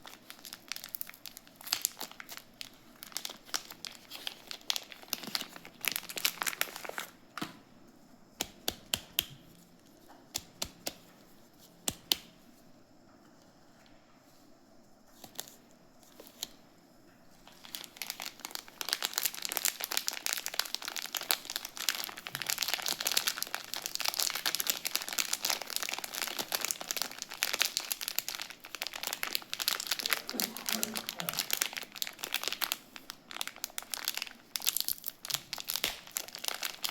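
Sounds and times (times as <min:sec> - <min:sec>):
wrapping crinkling: 0:00.0 - 0:07.5, 0:17.3 - 0:36.9.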